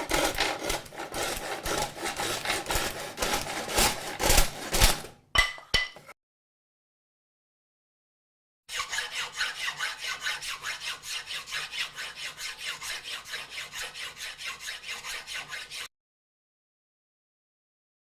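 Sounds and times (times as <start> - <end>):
hand saw cutting wood: 0.0 - 5.2, 8.7 - 15.9.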